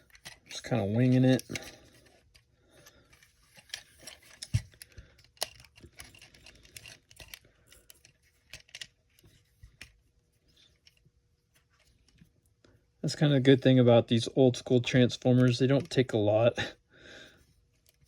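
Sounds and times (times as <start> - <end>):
plastic toy parts clicking: 0.0 - 2.4, 3.1 - 9.9.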